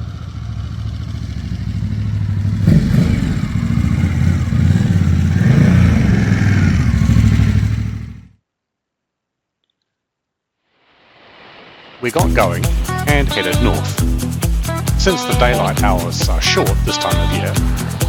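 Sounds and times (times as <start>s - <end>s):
motorcycle engine revving: 0.0s - 8.4s, 13.7s - 18.0s.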